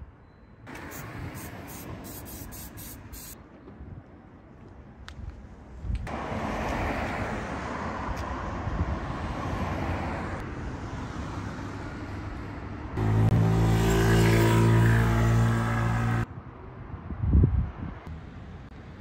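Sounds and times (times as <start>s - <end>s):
vehicle road and engine noise: 0.0s - 19.0s.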